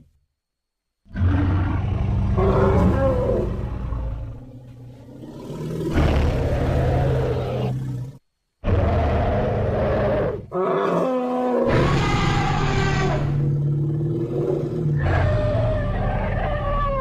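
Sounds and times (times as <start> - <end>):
animal roars and bellowing calls: 1.1 - 17.0.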